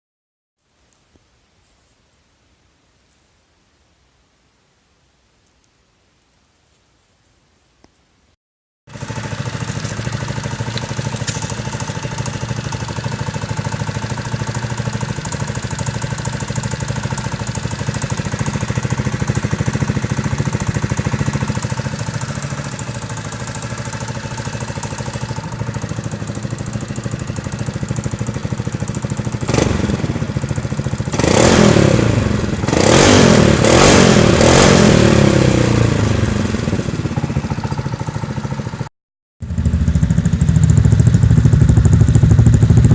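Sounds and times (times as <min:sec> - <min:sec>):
scooter engine idling and revving: 0:08.9 - 0:42.9.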